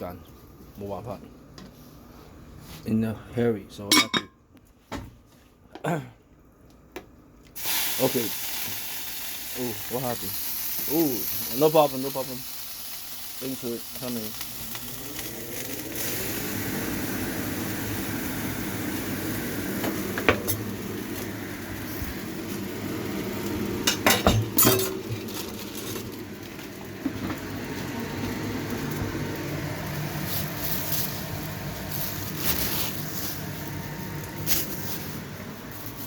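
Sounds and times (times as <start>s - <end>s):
metal utensils clinking: 3.9s - 4.3s, 23.9s - 26.1s
pot hissing on stove: 7.6s - 36.0s.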